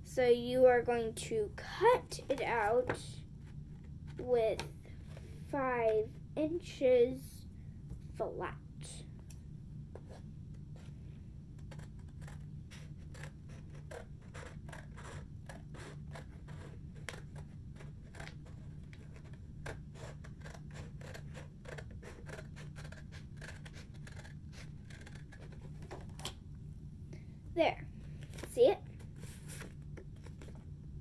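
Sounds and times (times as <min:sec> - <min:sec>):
low steady hum: 0:00.0 - 0:31.0
scissors snipping thick paper: 0:11.7 - 0:25.6.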